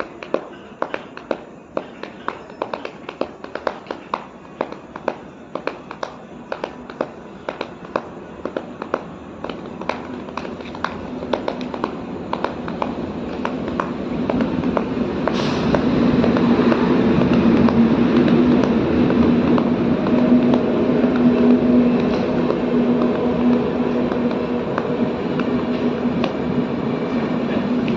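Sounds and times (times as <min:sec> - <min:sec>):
low rumbling noise: 0:08.0 - 0:27.9.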